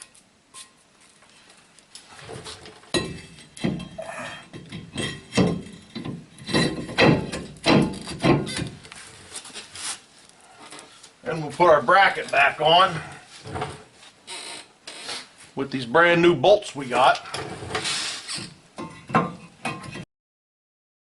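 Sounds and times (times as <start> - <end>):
metal clunks and knocks: 2.2 - 8.8, 17.3 - 20.0.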